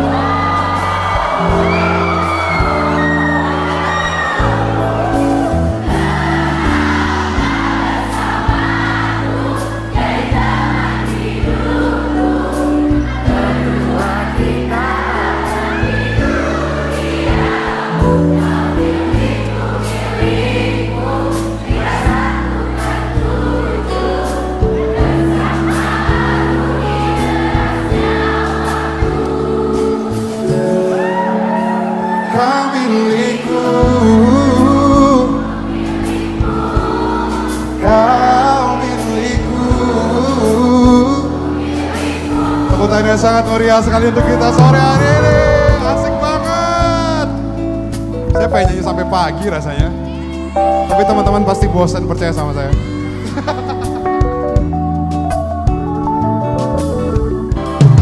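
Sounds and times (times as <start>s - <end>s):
drum beat: 0.0s - 11.8s, 36.0s - 38.3s, 44.2s - 47.3s, 52.7s - 55.0s
held bass notes: 0.0s - 31.7s, 33.4s - 58.0s
group of voices singing: 0.0s - 48.0s
live pop band playing: 0.0s - 58.0s
drum hits: 44.5s - 47.3s.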